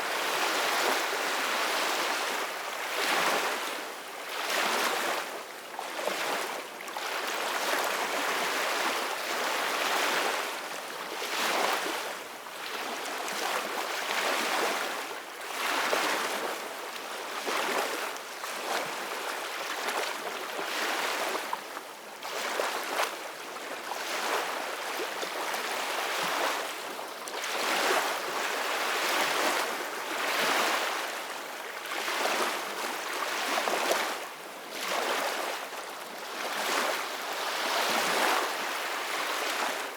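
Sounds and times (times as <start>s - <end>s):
small waves washing onto shore: 12.7s - 39.9s.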